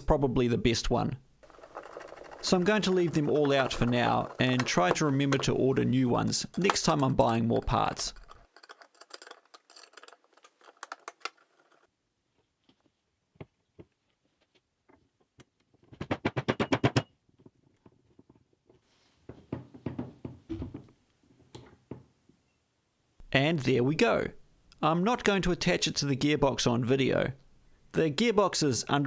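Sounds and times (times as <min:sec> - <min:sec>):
metal tools clinking and tapping: 0:01.4 - 0:11.8
rapid clicks: 0:01.4 - 0:11.9.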